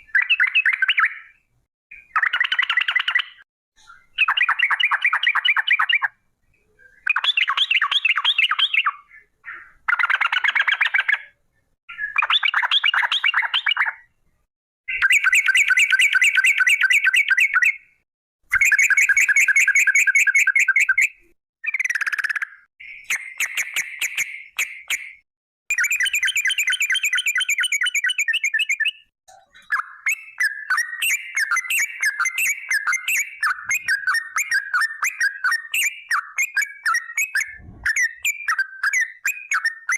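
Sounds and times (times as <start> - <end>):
bird chattering trills: 18.6 - 39.9.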